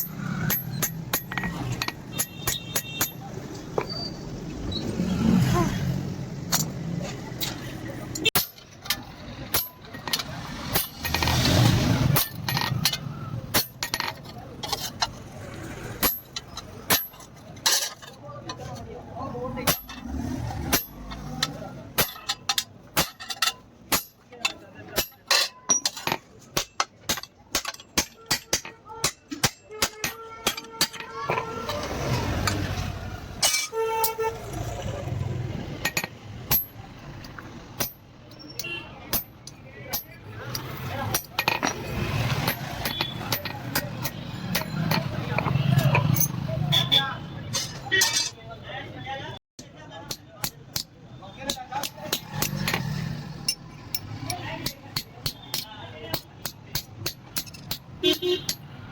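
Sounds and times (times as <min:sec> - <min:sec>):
hammer striking steel on anvil: 0:16.0 - 0:17.3, 0:19.6 - 0:20.0, 0:20.6 - 0:31.2, 0:35.8 - 0:36.8, 0:37.8 - 0:46.3, 0:50.1 - 0:58.7
metal strikes on steel: 0:19.6 - 0:31.3
vehicle horn honk: 0:46.7 - 0:47.2.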